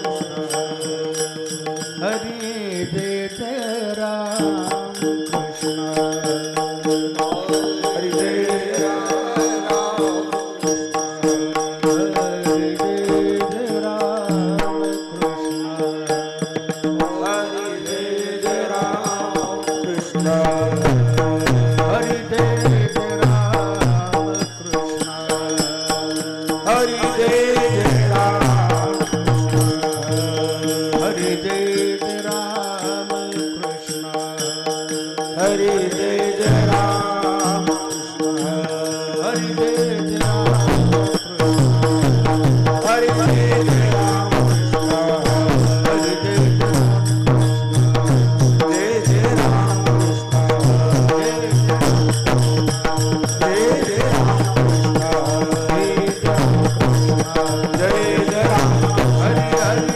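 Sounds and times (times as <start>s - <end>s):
person chanting a sung refrain: 0.0s - 59.9s
small hand cymbals: 0.0s - 59.9s
drum: 19.4s - 31.4s, 40.2s - 59.9s.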